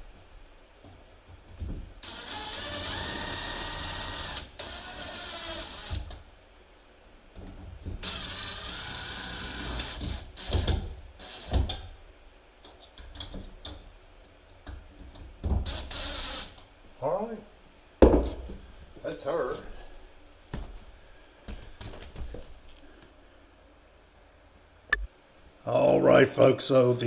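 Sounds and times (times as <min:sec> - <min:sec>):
cordless drill motor whining: 0:02.0 - 0:06.1, 0:08.0 - 0:10.6, 0:11.2 - 0:11.6, 0:15.7 - 0:16.5
sharp knocks and clicks: 0:24.9 - 0:25.1.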